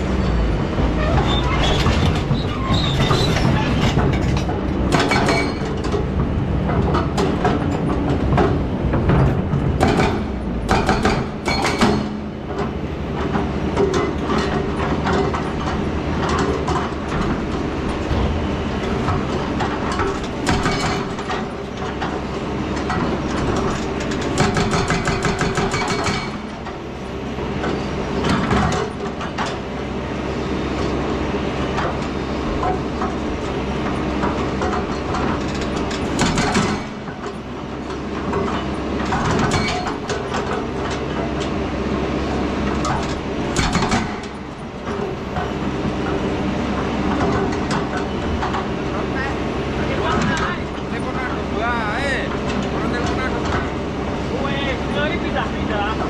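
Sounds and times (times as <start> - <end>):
excavator diesel engine running: 0.0 - 56.0
metallic clanking and rattling: 0.9 - 26.9, 31.7 - 41.6.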